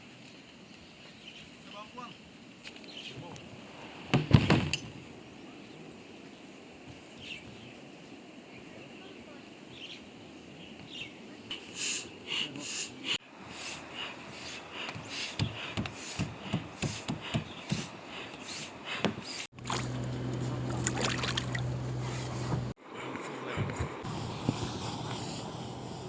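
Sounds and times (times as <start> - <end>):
water splashing around raft: 19.5 - 21.8
steady low hum: 19.5 - 26.0.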